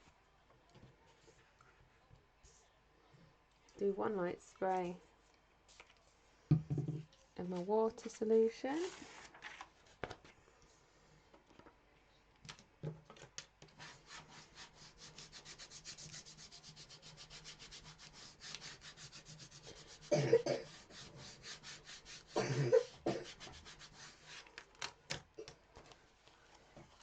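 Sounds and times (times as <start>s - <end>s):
rubbing strokes on surface: 13.7s - 24.5s.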